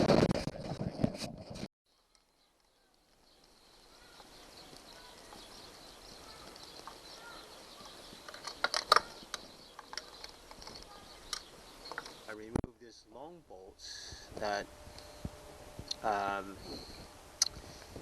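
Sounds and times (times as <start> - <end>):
bird chirps: 2.0 - 12.4
sharp clicks and knocks: 7.8 - 12.7.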